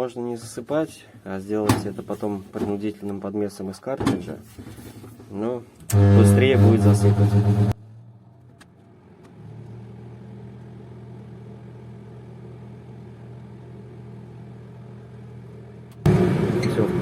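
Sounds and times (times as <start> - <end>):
low hum: 5.9 - 8.2.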